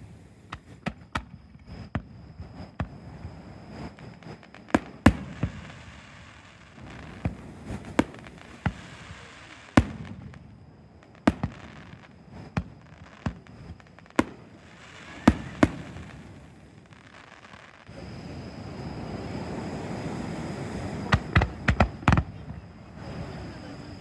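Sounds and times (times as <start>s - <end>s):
fireworks bangs: 0.0s - 17.9s.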